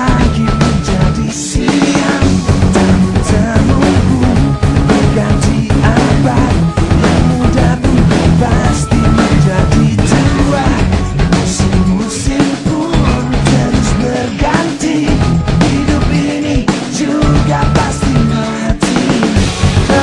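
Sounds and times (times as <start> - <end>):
person singing: 0.0 - 20.0
rock music with drums: 0.0 - 20.0.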